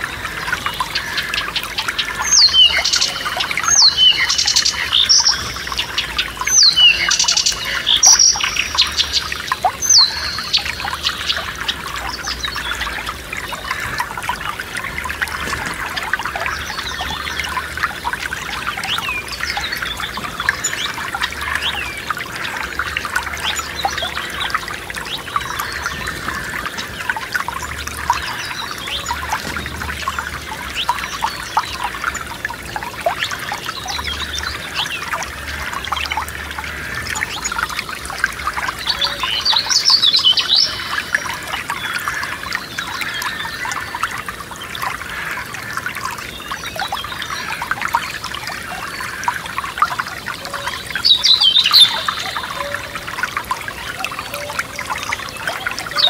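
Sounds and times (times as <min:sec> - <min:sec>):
stream babbling over stones: 0:00.0 - 0:56.0
bird chirps: 0:51.0 - 0:53.0.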